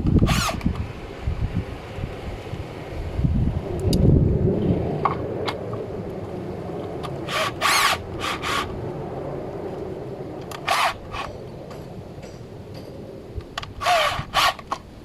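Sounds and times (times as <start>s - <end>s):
electric drill running: 0.2s - 0.7s, 7.2s - 8.7s, 10.6s - 11.3s, 13.8s - 14.6s
drill bit scraping wood: 0.2s - 0.8s, 7.2s - 8.7s, 10.6s - 11.3s, 13.8s - 14.7s.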